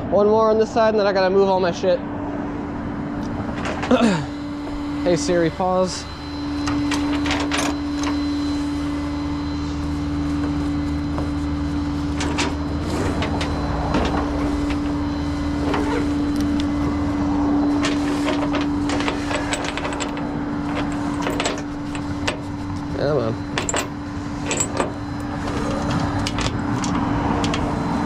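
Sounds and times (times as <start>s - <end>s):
truck engine droning: 0.0s - 28.0s.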